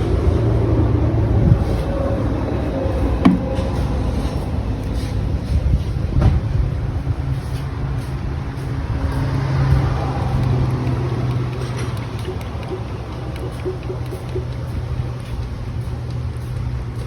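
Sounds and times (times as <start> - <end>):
car engine running: 0.0 - 4.8, 8.0 - 17.0.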